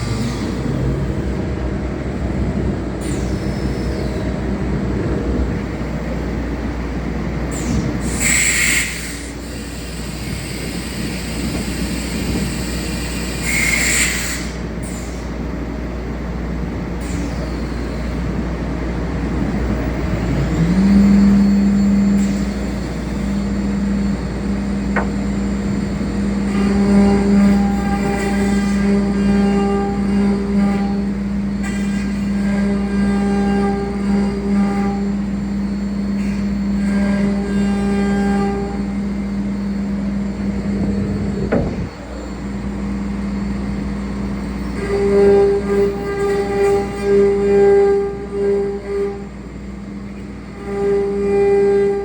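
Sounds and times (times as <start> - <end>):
machinery low hum: 0.0 - 52.0
spindle motor high hum: 0.0 - 52.0.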